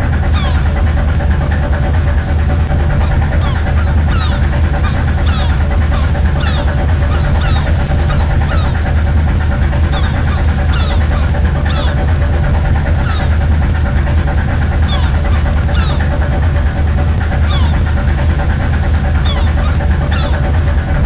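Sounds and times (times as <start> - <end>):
boat engine droning: 0.0 - 21.0
high falling calls: 0.2 - 0.8, 2.9 - 13.5, 14.7 - 16.3, 17.3 - 20.6.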